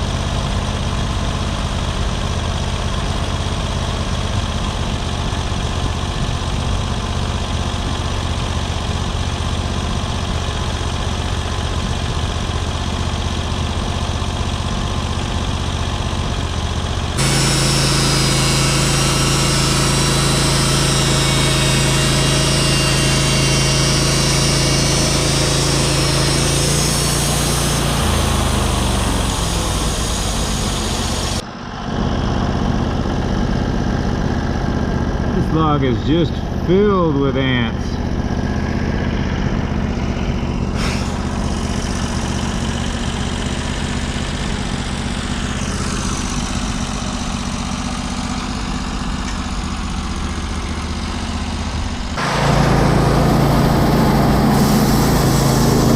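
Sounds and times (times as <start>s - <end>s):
sawmill engine and saw running: 0.0s - 55.9s
strong hum: 0.0s - 55.9s.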